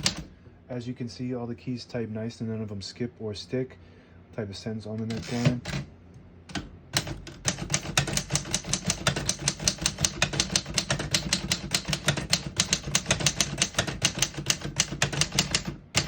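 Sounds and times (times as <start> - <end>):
typewriter keys striking: 0.0 - 0.3, 6.5 - 16.0.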